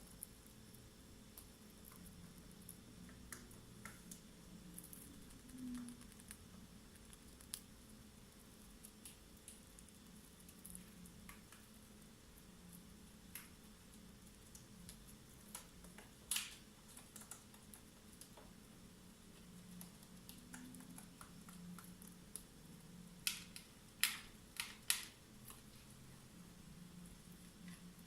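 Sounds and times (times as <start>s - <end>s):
faint steady hum: 0.0s - 28.0s
birds pecking clicks: 14.5s - 18.4s, 23.2s - 25.6s.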